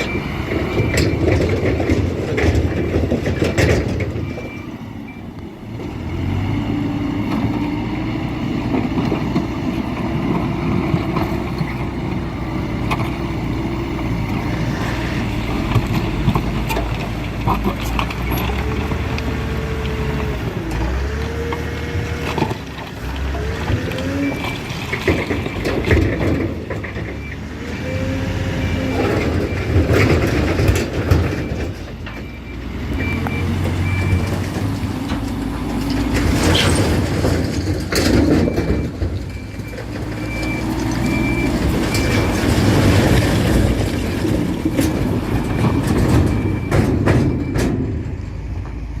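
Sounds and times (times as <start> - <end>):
diesel earthmoving machinery: 0.0 - 49.0
clanks of rock and steel: 34.2 - 41.2.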